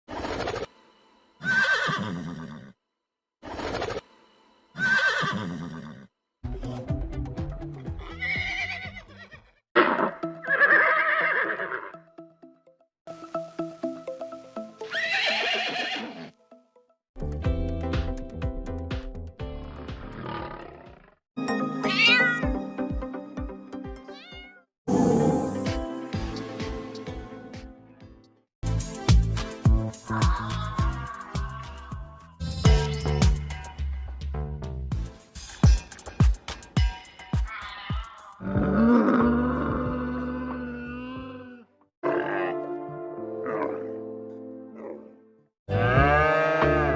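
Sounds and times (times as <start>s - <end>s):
horse whinnying: 1.4s - 2.8s, 4.8s - 6.1s, 8.0s - 12.0s, 14.8s - 16.4s
background music with steady beat: 17.2s - 20.1s, 25.6s - 38.2s
cat meowing: 21.9s - 22.5s, 24.1s - 24.6s, 37.5s - 38.5s.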